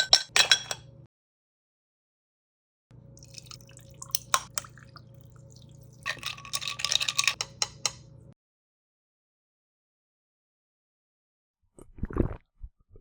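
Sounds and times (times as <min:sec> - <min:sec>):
glass clinks: 0:00.0 - 0:00.8
liquid dripping in a glass: 0:03.2 - 0:06.8.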